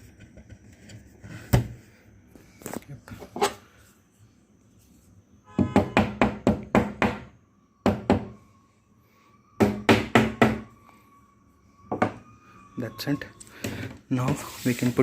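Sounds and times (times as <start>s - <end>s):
hammer striking wooden board: 5.6s - 8.3s, 9.6s - 10.6s.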